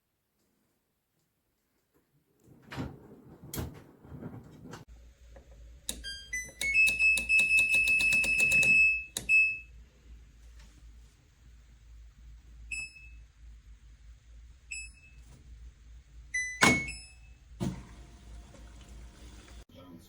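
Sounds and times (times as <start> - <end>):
washing machine beeps: 5.9 - 9.8, 12.7 - 13.3, 14.7 - 15.4, 16.3 - 19.5.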